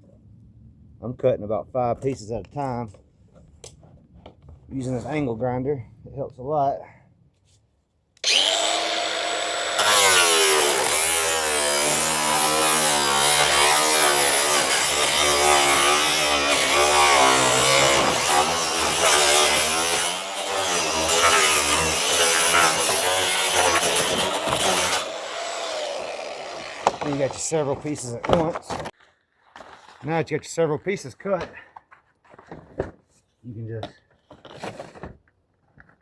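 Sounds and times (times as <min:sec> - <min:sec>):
angle grinder cutting panels: 0:08.2 - 0:28.9.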